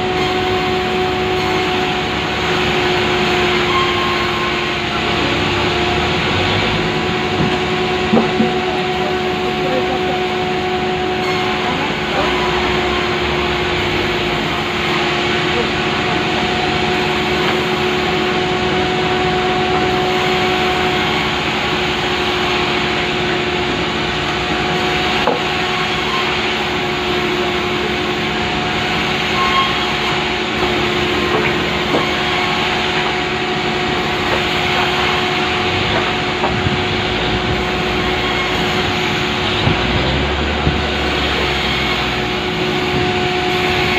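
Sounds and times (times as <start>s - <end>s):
power saw cutting through log: 0.0s - 43.9s.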